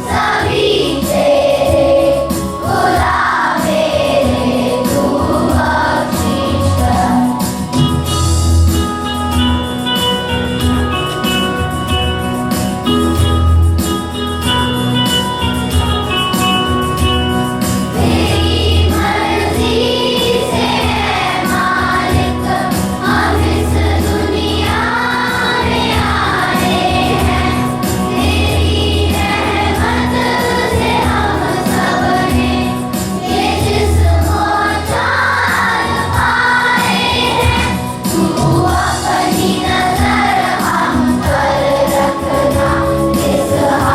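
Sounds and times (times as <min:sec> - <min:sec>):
choir singing: 0:00.0 - 0:07.8, 0:17.9 - 0:43.9.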